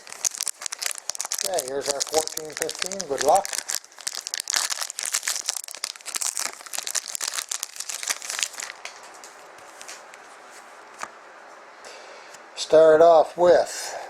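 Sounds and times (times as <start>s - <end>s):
plastic wrapping tearing and crinkling: 0.0s - 10.1s.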